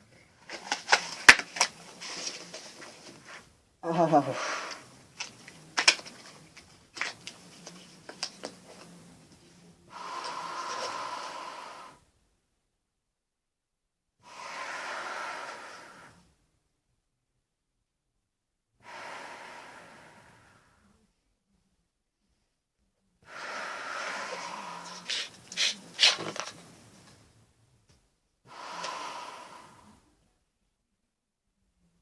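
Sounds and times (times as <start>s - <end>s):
breathing through gas mask: 3.9s - 5.0s, 9.9s - 12.1s, 14.2s - 16.3s, 18.8s - 20.9s, 23.2s - 26.4s, 28.5s - 30.1s.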